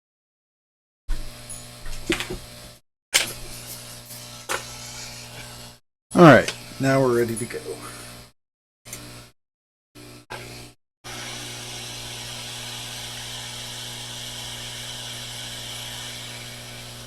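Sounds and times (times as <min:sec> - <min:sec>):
hot air blower hiss: 0:11.1 - 0:17.0.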